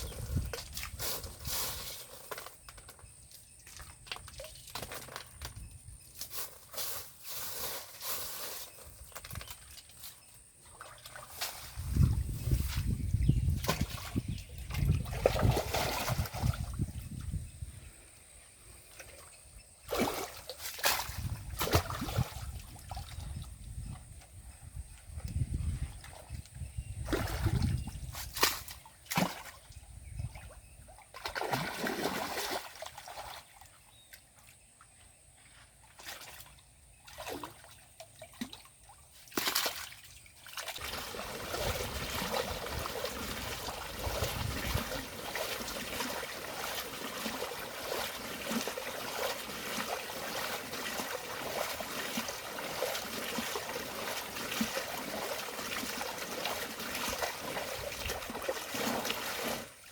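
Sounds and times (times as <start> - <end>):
water splashing and sloshing: 0.0 - 17.7, 18.7 - 59.9
trickle of running water: 40.3 - 59.9.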